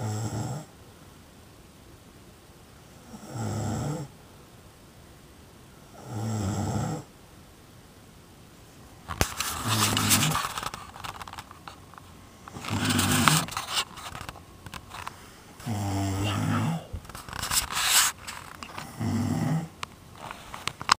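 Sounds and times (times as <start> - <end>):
person snoring: 0.0 - 0.7, 3.0 - 4.1, 5.9 - 7.1, 12.5 - 13.5, 15.6 - 17.0, 18.8 - 19.8
breathy breathing: 14.9 - 17.2.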